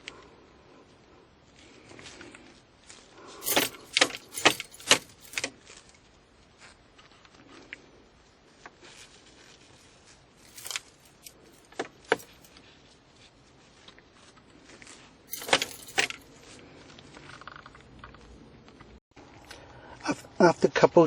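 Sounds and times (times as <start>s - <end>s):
keys jangling on a key ring: 3.4s - 5.5s, 10.4s - 12.6s, 15.3s - 16.4s.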